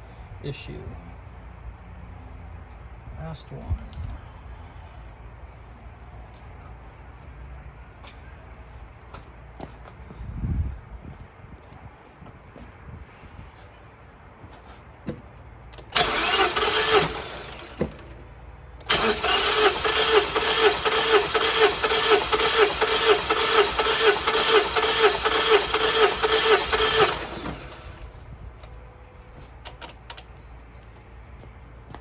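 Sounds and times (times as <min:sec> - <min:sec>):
starter cranking engine: 0:15.9 - 0:18.2, 0:18.8 - 0:28.1.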